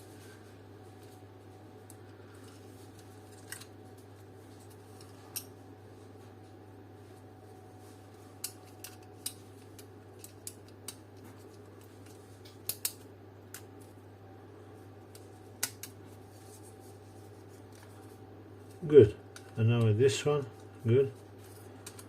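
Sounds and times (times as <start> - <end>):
steady low hum: 0.0 - 22.0
clicks and taps of small parts: 12.0 - 13.7.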